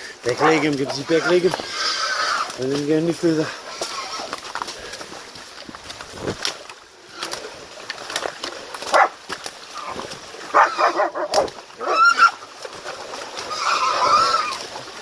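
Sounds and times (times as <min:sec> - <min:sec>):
dogs barking: 0:00.3 - 0:00.7, 0:08.9 - 0:09.2, 0:09.8 - 0:12.3
boar squealing: 0:00.3 - 0:02.6, 0:03.6 - 0:04.4, 0:09.8 - 0:12.4, 0:13.4 - 0:14.7.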